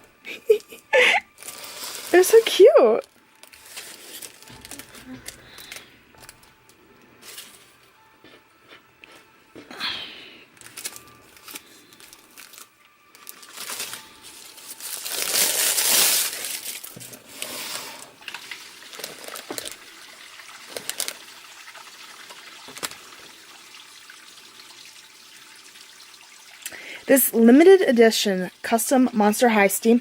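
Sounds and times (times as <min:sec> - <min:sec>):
packaging rustling and crinkling: 0:01.4 - 0:06.5, 0:10.6 - 0:19.9, 0:20.7 - 0:21.3.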